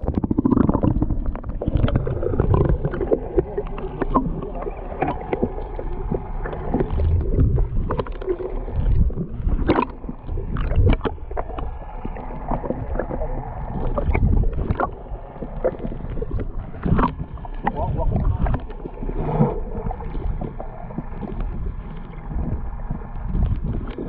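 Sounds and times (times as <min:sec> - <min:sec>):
water against hull: 0:00.0 - 0:24.0
wind buffeting microphone: 0:16.0 - 0:18.8.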